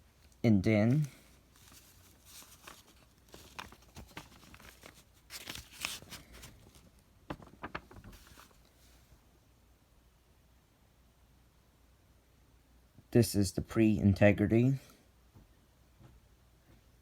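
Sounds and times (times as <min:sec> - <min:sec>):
rustling: 0:00.0 - 0:09.1.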